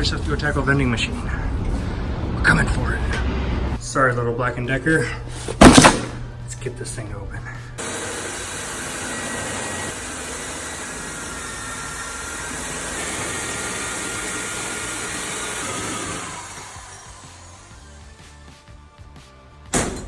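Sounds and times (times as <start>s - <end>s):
power drill drilling into metal: 7.8s - 18.1s.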